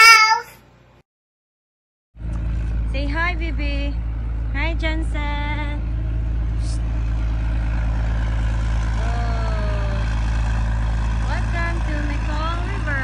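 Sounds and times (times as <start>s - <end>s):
short high voice: 0.0s - 0.6s
low rumble of road traffic: 2.2s - 13.0s.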